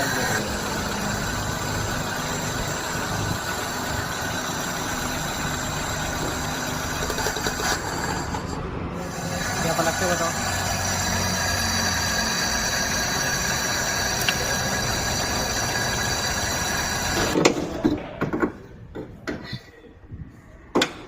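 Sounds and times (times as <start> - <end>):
car engine running with whine: 0.0 - 17.4
scattered clicks and knocks: 6.2 - 7.9, 17.2 - 19.5, 20.7 - 21.0
engine cutting out with knock: 16.4 - 18.0.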